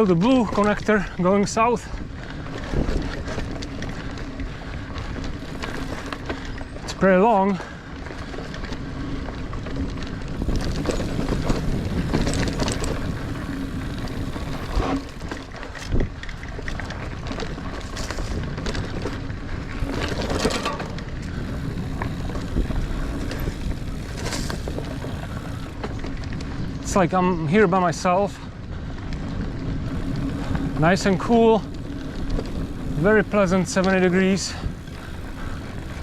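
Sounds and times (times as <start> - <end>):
bike tyres rumbling on dirt: 0.0 - 36.0
bike knocking over bumps: 10.1 - 16.0, 19.8 - 26.2.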